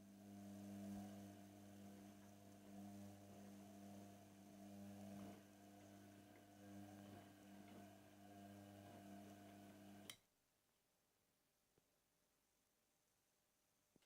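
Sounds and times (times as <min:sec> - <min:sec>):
washing machine electric hum: 0:00.0 - 0:10.1.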